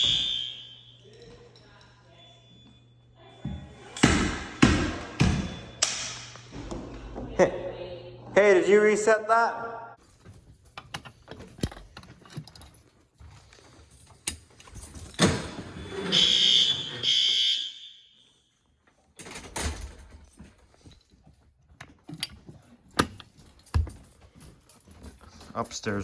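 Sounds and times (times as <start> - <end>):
fire alarm horn blasts: 0.0 - 1.1, 15.9 - 18.4
handling clicks and knocks: 10.1 - 15.4, 19.2 - 26.0.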